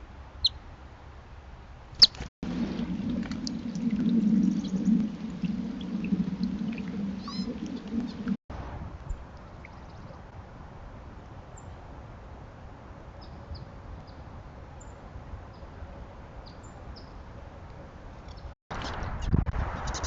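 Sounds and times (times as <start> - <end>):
low rumble and hiss: 0.0 - 18.3
faint bird chirps: 7.2 - 8.3.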